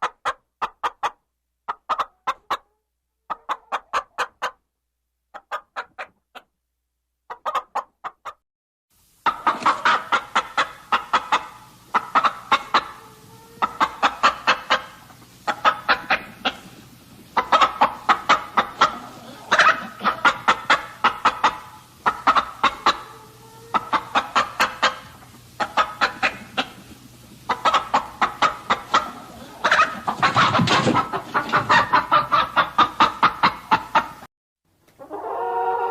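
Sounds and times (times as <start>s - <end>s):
hens clucking: 0.0s - 4.6s, 5.3s - 6.5s, 7.3s - 8.4s, 9.2s - 34.3s, 34.9s - 35.9s
low background hum: 9.0s - 34.2s.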